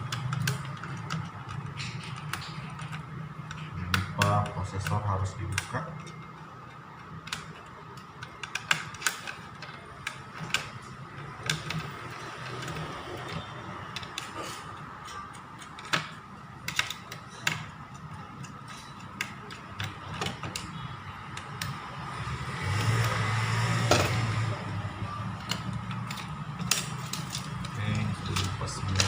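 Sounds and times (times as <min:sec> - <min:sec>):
clicks and taps of parts handled: 0:00.0 - 0:11.9, 0:25.4 - 0:29.0.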